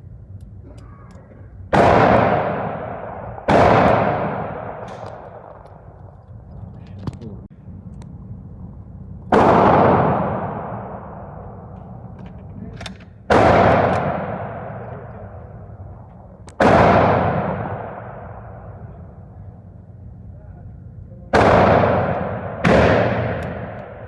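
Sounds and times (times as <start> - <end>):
rifle shots with echo: 1.7 - 6.0, 9.3 - 12.0, 12.8 - 19.4, 21.3 - 24.0.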